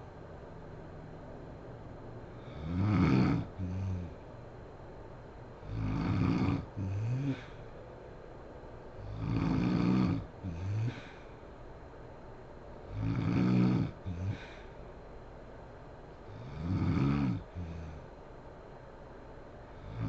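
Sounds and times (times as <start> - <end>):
woman snoring heavily: 2.4 - 4.2, 5.6 - 7.6, 9.0 - 11.3, 12.9 - 14.7, 16.3 - 18.1, 19.8 - 20.0.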